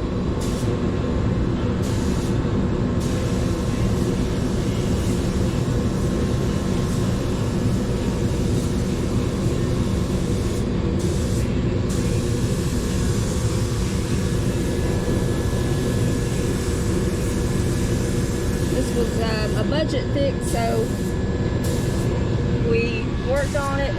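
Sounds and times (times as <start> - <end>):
machine drone with low hum: 0.0 - 23.9.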